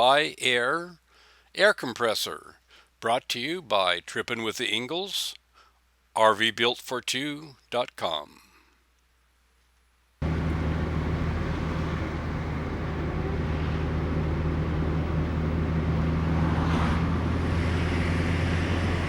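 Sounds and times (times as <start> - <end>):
motor running with low hum: 10.2 - 19.0.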